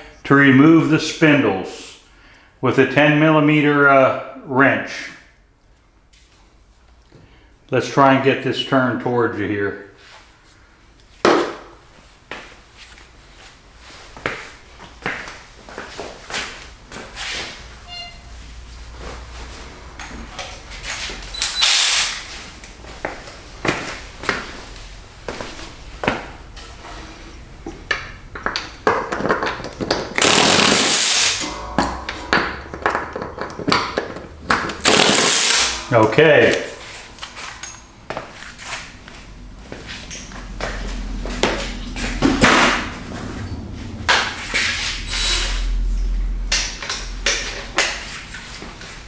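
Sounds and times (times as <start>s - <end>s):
power gun running: 21.4s - 22.3s, 30.2s - 31.6s, 34.8s - 35.9s
metal knocks and clanks: 28.4s - 36.2s
metal scraping and rattling: 29.3s - 37.9s.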